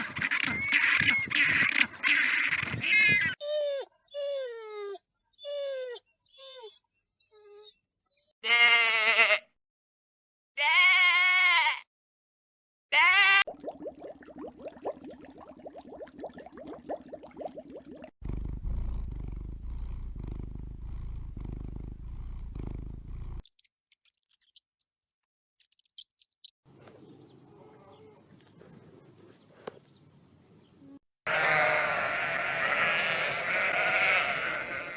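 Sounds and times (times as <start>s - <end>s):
goat bleat: 8.4s - 9.5s, 10.6s - 11.8s, 12.9s - 13.4s, 31.3s - 34.9s
cat purring: 18.2s - 23.4s.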